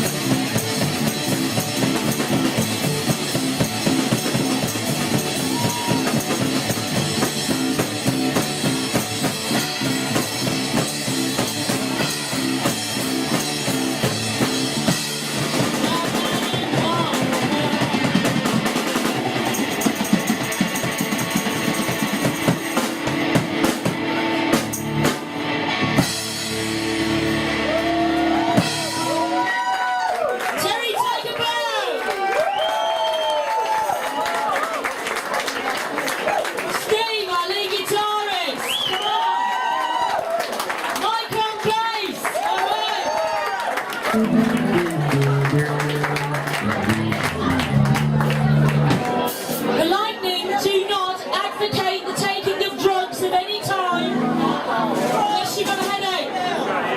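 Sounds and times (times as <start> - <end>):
live rock band playing: 0.0 - 29.9, 43.8 - 56.9.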